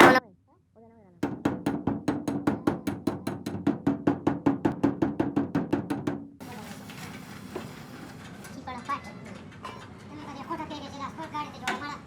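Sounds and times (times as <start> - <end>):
hammer tapping sheet metal: 1.2 - 6.4.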